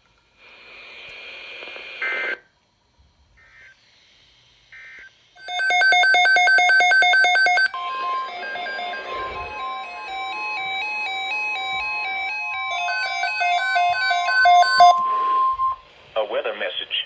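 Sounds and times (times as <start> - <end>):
faint data bursts: 3.3 - 17.0
rapid electronic alert beeps: 5.4 - 15.8
steady high alarm tone: 5.4 - 15.9
stepping electronic melody: 7.6 - 15.8.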